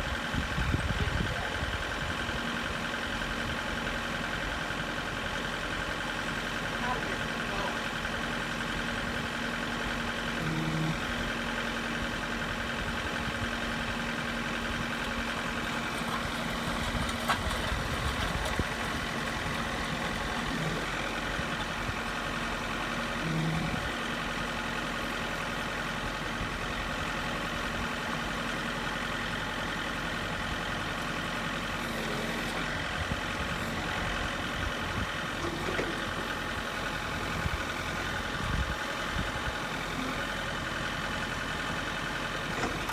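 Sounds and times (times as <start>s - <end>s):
tractor diesel engine running: 0.0s - 42.9s
auger boring into rock: 15.4s - 23.8s.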